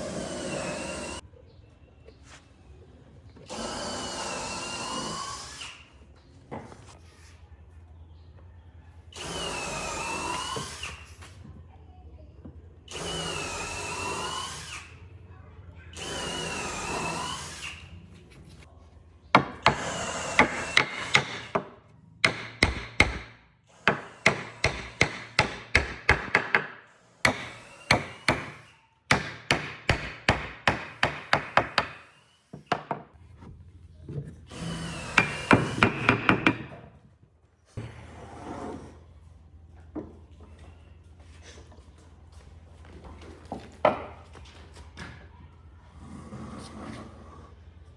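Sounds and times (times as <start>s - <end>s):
small power tool whirring: 9.1s - 11.2s, 12.9s - 15.0s, 16.0s - 17.8s, 27.0s - 28.9s
hammer striking wood: 19.3s - 33.1s, 35.0s - 36.9s.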